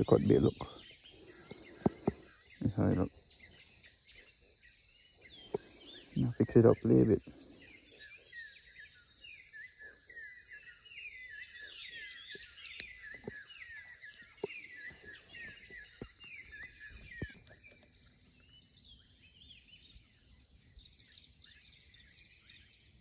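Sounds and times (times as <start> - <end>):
birds chirping: 0.0 - 23.0.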